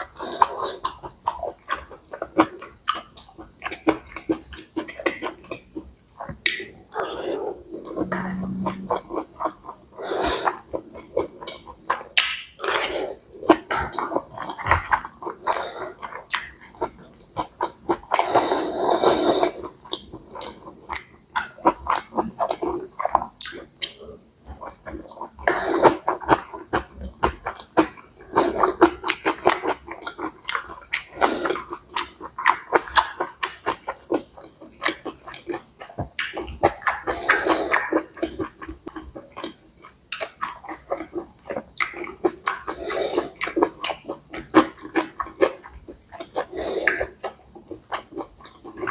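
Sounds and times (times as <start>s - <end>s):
person chewing food: 19.9s - 48.9s.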